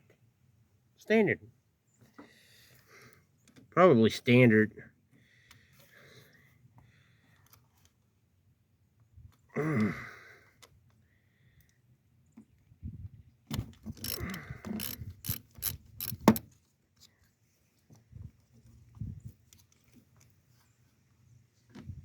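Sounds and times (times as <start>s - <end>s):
ratchet wrench clicking: 13.9s - 16.4s.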